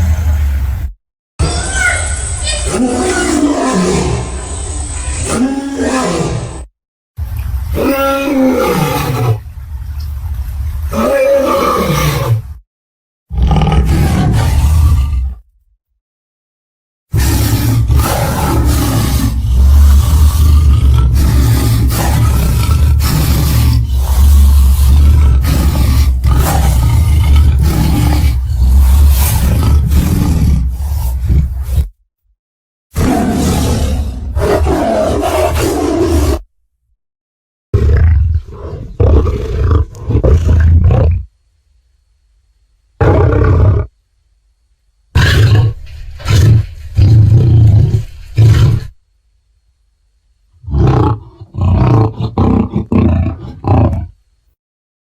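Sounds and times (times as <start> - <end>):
monster roaring: 1.4 - 6.7, 13.3 - 15.4, 17.1 - 31.9, 33.0 - 36.4, 50.6 - 54.1.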